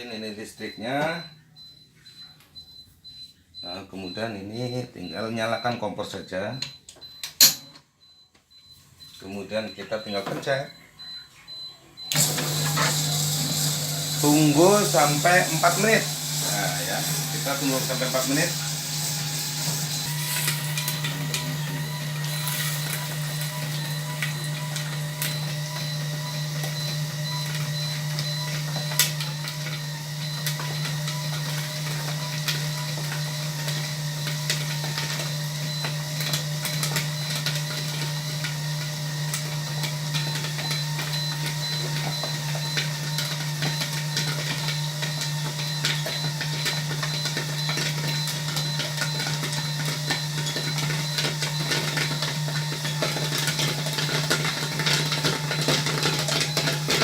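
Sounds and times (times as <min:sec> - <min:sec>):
popcorn machine motor hum: 0:12.0 - 0:57.0.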